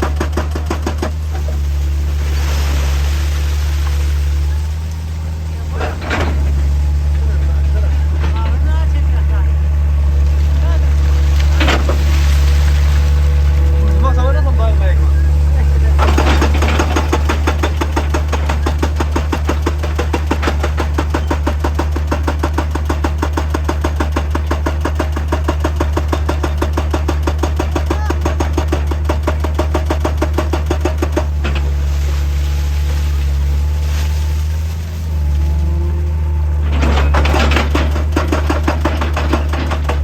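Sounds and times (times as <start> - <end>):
low engine drone: 0.0 - 21.3, 31.0 - 40.0.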